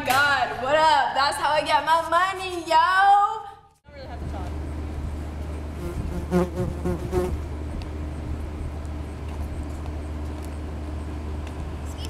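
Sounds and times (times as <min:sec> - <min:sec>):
constant buzzing tone: 0:04.7 - 0:11.4
low hum: 0:05.7 - 0:09.8.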